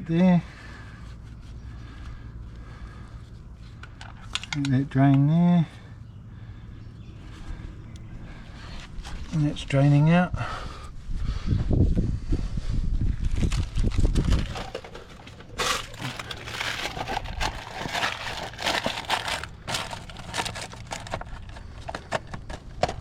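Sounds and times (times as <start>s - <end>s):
low rumbling handling noise: 11.1s - 23.0s
close crinkling and crackling: 13.1s - 23.0s.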